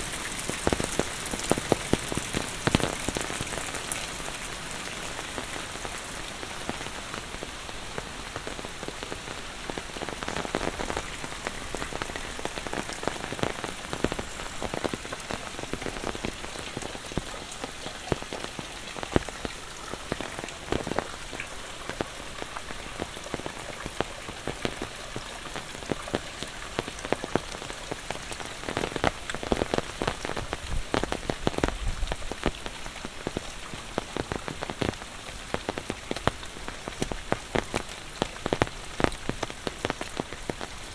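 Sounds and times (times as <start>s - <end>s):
sharp raindrop hits: 0.0s - 7.5s
heavy rain falling: 0.0s - 40.9s.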